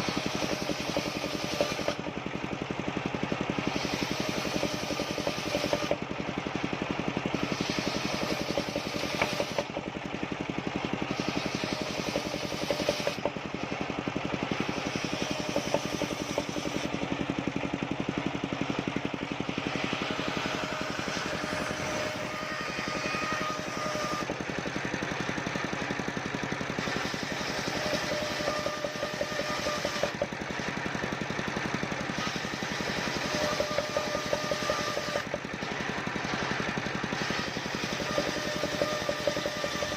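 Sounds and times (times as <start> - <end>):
high whining saw tone: 0.0 - 2.1, 3.5 - 6.0, 7.3 - 9.8, 11.0 - 13.3, 14.4 - 17.2, 19.5 - 24.8, 26.7 - 30.4, 32.1 - 39.9
sawmill engine running: 0.0 - 39.9.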